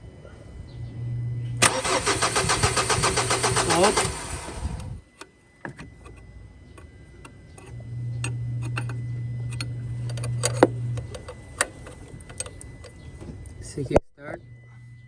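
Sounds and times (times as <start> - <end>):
steady low hum: 0.0 - 15.0
engine clicking and ticking: 1.6 - 4.9.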